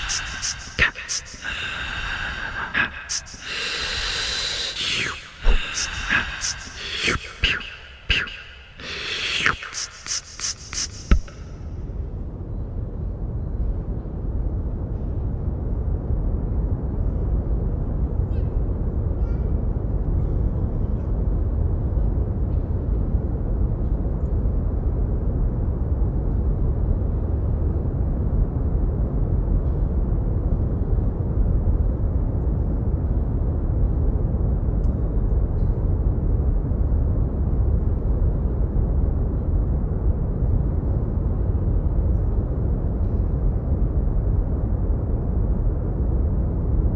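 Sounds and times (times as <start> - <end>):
brown noise rumbling hiss: 0.0 - 11.8.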